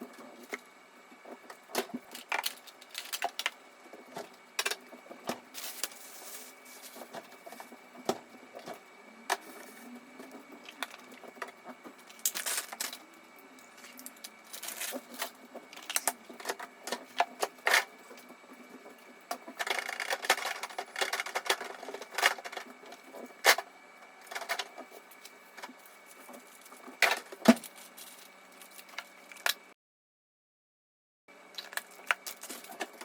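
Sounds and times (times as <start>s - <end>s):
household items clicking and knocking: 18.8s - 23.6s.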